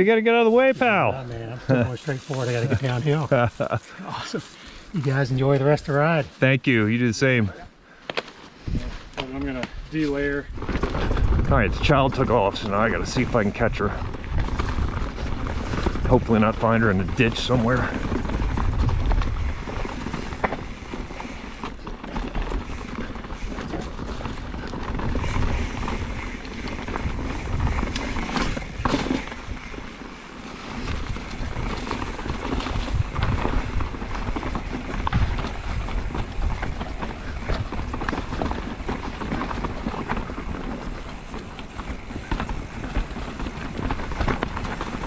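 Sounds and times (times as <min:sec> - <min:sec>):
bike clattering over rocks: 0:09.2 - 0:45.0.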